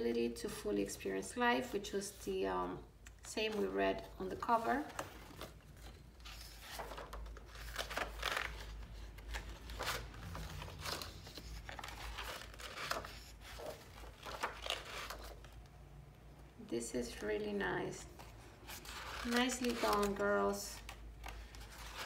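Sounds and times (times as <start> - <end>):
paper pages rustling: 3.4 - 15.7, 17.0 - 22.0.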